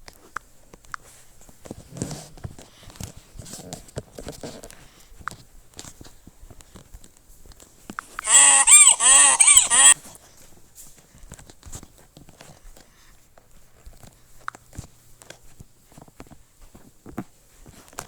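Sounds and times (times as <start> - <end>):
donkey braying: 8.2 - 10.0
faint clicks: 8.2 - 10.0.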